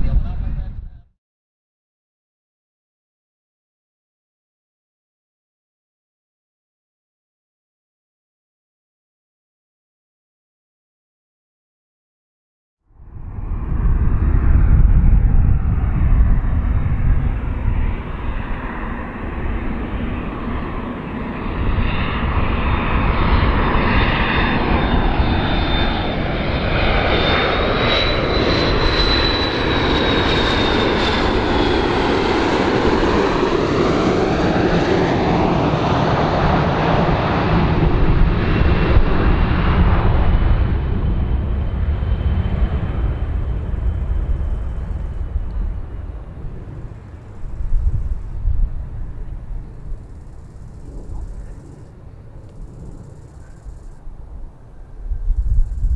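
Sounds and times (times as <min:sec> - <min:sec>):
airplane engines rumbling: 0:00.0 - 0:01.1, 0:12.9 - 0:55.9
high engine whine: 0:13.0 - 0:55.9.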